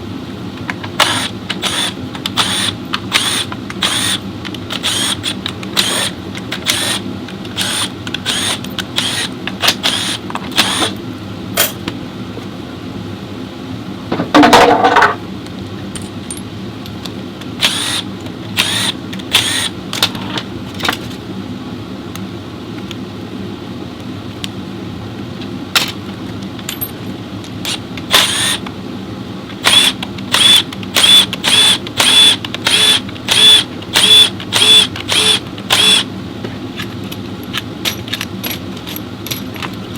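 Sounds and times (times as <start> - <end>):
steady hum: 0.0 - 39.9
metal tools clinking: 15.9 - 16.5, 26.6 - 27.2, 36.8 - 39.9.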